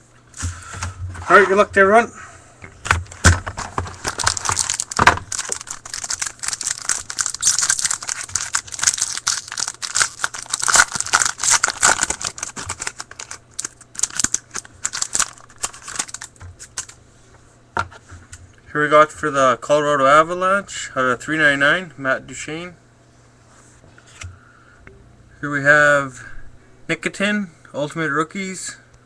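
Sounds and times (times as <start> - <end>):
packaging crinkling and tearing: 2.9 - 17.0
packaging snapping: 2.9 - 17.0.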